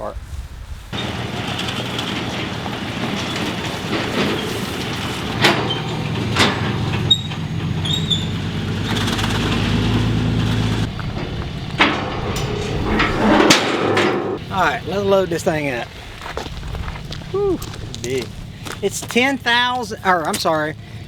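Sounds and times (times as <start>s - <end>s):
engine running steadily: 1.0s - 21.0s.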